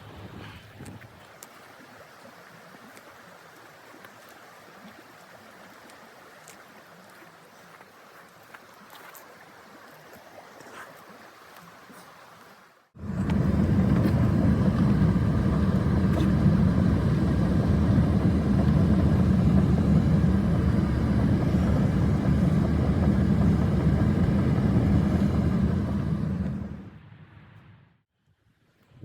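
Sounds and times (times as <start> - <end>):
strong wind buffeting microphone: 0.0 - 1.2, 13.0 - 27.4.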